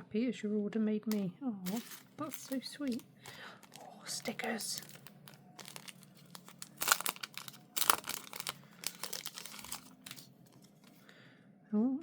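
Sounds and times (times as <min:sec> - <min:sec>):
paper packaging crinkling: 0:01.7 - 0:11.0.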